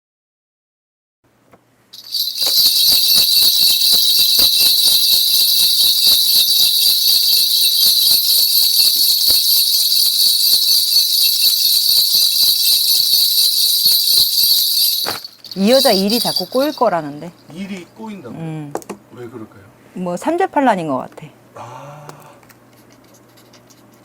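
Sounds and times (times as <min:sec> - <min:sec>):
bells shaken rapidly jingling: 0:02.0 - 0:17.4.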